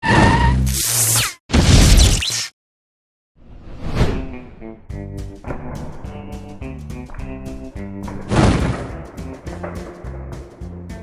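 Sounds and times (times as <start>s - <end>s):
whoosh sound effects: 3.4s - 4.8s.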